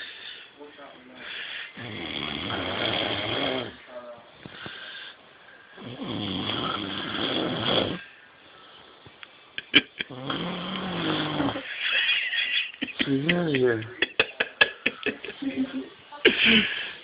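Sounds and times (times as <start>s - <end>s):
man snoring: 1.8s - 3.8s, 5.8s - 8.0s, 10.1s - 11.6s.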